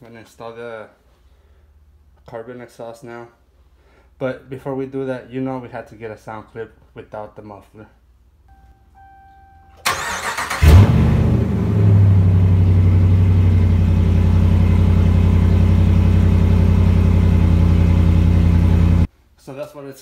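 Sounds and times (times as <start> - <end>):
unmuffled engine revving and idling: 10.5 - 19.1.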